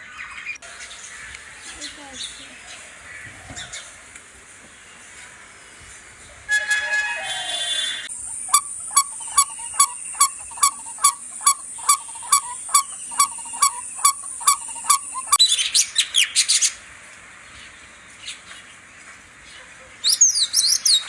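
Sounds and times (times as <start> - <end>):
repeated short bird call: 7.2 - 15.8
burst of bird chirps: 7.5 - 15.7.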